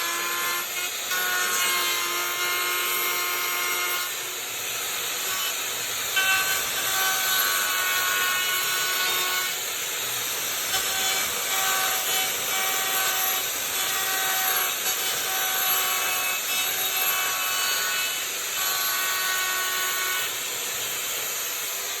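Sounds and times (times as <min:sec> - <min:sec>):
router bit cutting wood: 0:00.0 - 0:22.0.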